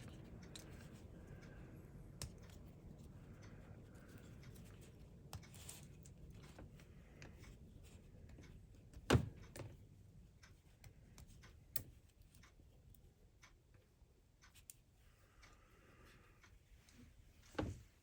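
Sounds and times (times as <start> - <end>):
small plastic and metal parts clicking: 0.0 - 1.6.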